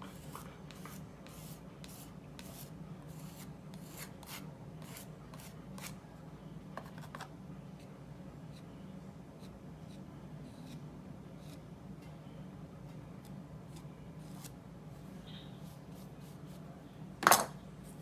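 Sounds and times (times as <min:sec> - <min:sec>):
paintbrush strokes on paper: 0:00.0 - 0:06.0.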